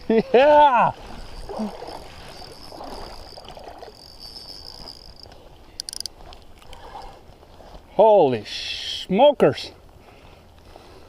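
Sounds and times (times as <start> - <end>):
river flowing: 0.3 - 7.9
thin high whine: 0.8 - 6.2.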